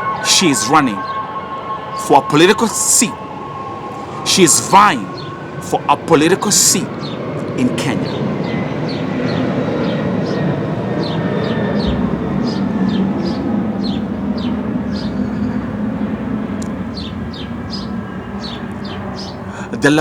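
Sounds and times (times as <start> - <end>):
steady low rumble: 11.7 - 18.0.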